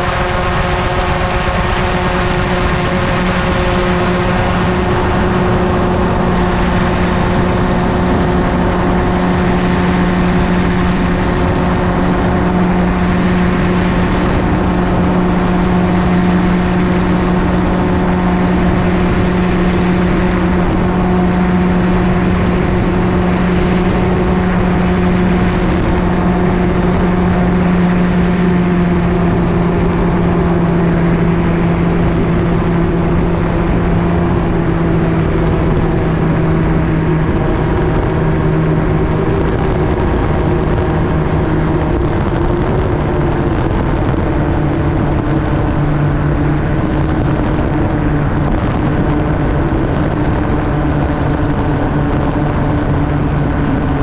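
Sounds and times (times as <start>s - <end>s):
wind rushing: 0.0s - 12.5s
aircraft engine and propeller: 0.0s - 54.0s.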